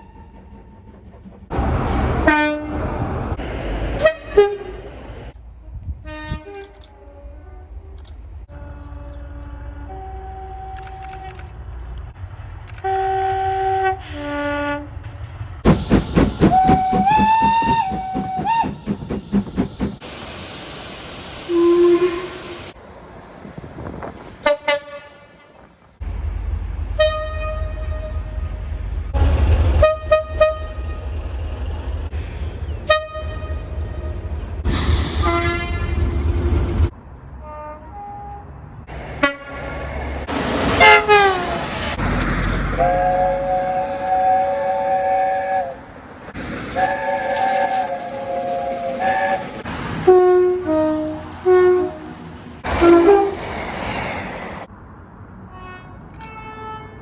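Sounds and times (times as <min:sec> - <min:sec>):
train horn: 0:02.2 - 0:03.0, 0:04.0 - 0:04.7, 0:05.8 - 0:07.7, 0:08.5 - 0:11.0, 0:12.8 - 0:15.1, 0:21.5 - 0:22.6, 0:24.4 - 0:25.6, 0:27.0 - 0:31.1, 0:32.8 - 0:34.2, 0:35.2 - 0:36.4, 0:37.4 - 0:38.5, 0:39.2 - 0:39.7, 0:40.3 - 0:42.0, 0:42.8 - 0:45.8, 0:46.8 - 0:53.5, 0:55.5 - 0:57.0
low rumble: 0:15.6 - 0:20.1
loud hiss: 0:15.6 - 0:22.8, 0:40.3 - 0:42.0.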